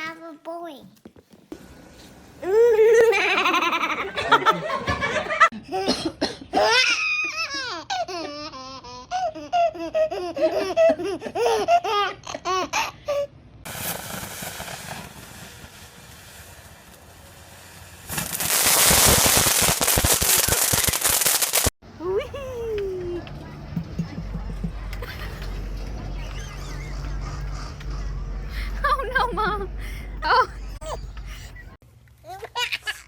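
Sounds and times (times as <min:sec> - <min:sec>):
small child giggling: 0:02.4 - 0:13.2, 0:23.8 - 0:33.0
steady hiss: 0:13.7 - 0:21.7.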